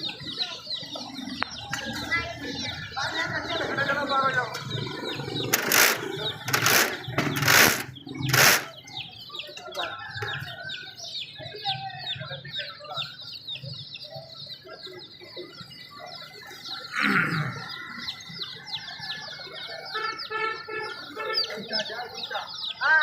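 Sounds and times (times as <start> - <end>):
chicks peeping: 0.0 - 16.9, 17.5 - 23.0
harsh loud chick call: 5.4 - 8.8.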